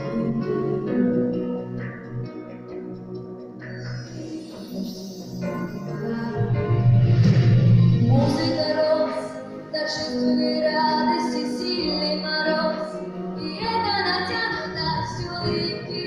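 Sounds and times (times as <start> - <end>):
woman singing: 8.0 - 16.0.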